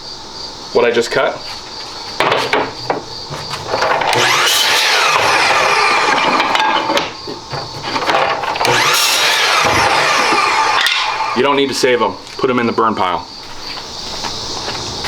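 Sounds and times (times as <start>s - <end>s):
power tool motor whining: 3.3s - 11.9s.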